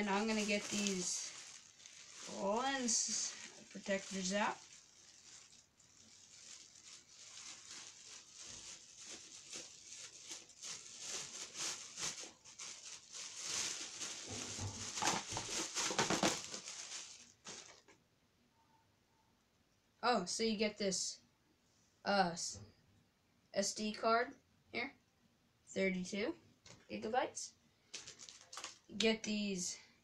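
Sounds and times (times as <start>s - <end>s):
plastic packaging crinkling: 0.0s - 18.0s, 27.9s - 29.0s.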